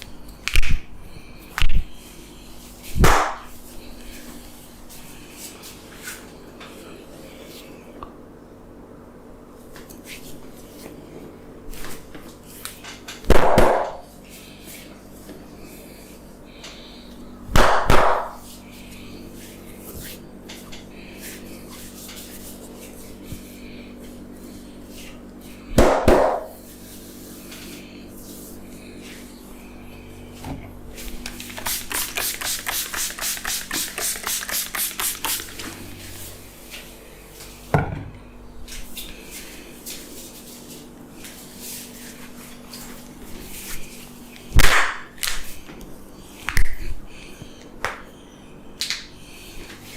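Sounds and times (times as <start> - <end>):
steady low hum: 0.0 - 49.9
chopping blows with hands: 3.0 - 3.5, 13.3 - 14.0, 17.5 - 18.4, 25.8 - 26.5, 44.6 - 45.4
hand slaps: 3.0 - 3.5, 13.4 - 14.0, 17.6 - 18.4, 25.8 - 26.5, 44.6 - 45.5.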